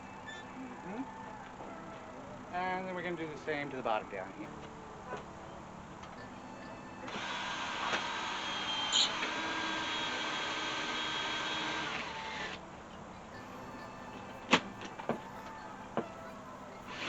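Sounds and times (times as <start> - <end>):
electric drill drilling: 7.1 - 12.6.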